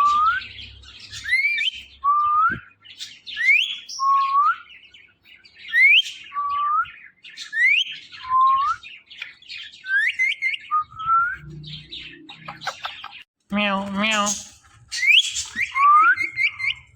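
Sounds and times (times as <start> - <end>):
parrot chatter: 12.3 - 13.3
parrot whistling: 15.0 - 16.9.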